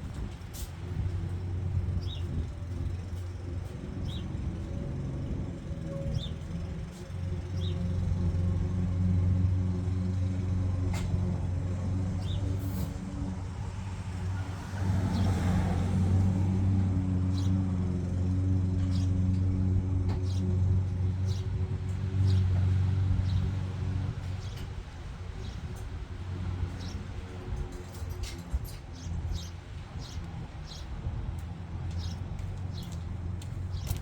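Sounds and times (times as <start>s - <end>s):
low motor hum: 0.0s - 34.0s.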